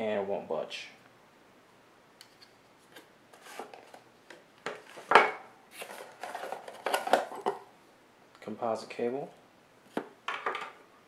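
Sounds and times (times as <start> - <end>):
packaging rubbing and scraping: 5.7 - 7.4.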